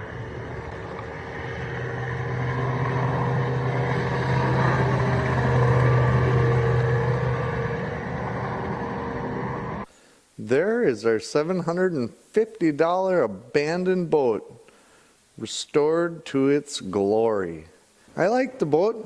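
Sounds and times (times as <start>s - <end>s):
motorboat engine running: 0.0s - 9.8s.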